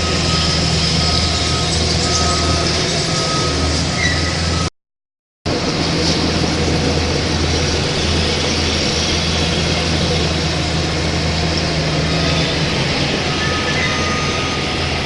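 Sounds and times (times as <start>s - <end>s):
model engine drone: 5.5s - 15.0s.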